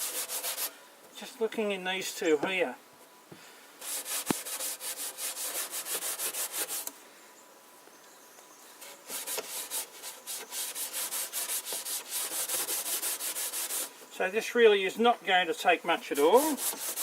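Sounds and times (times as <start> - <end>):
steel wool scrubbing wood: 0.0 - 0.7, 3.8 - 6.9, 8.8 - 14.0, 15.6 - 17.0.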